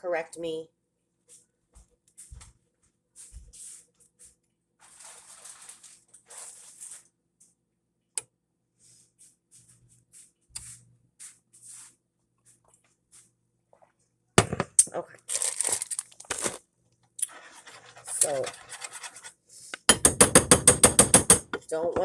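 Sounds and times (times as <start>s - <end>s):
rustling and handling noises: 1.2s - 7.2s, 14.4s - 19.9s.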